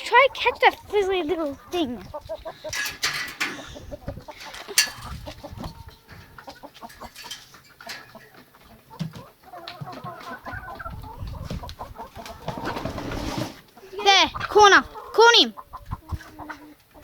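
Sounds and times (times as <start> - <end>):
chickens clucking: 0.0 - 17.0
scuffling and clattering: 2.6 - 13.7.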